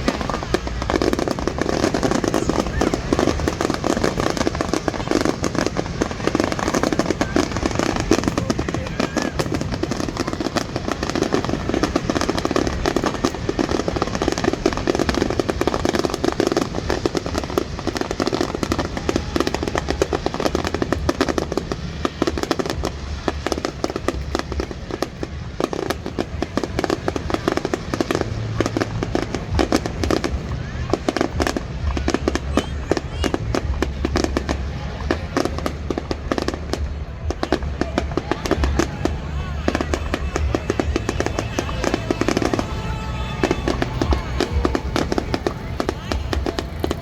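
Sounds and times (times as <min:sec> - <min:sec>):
fireworks crackling and popping: 0:00.0 - 0:47.0.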